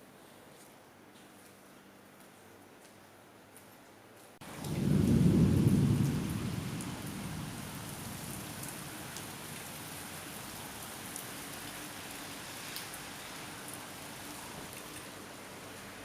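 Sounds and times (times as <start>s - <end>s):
low rumble of thunder: 4.4s - 10.0s
steady rain: 4.4s - 16.0s.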